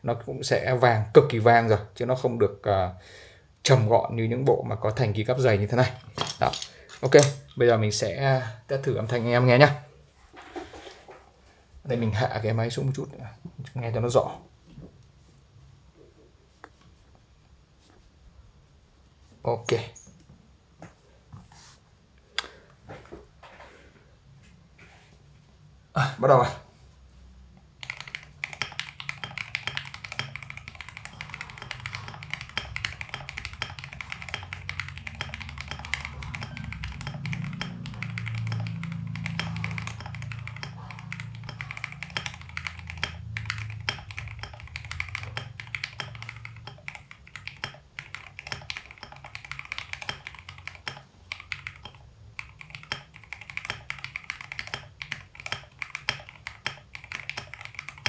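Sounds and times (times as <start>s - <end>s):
fast typing on mechanical keyboard: 27.8s - 58.0s.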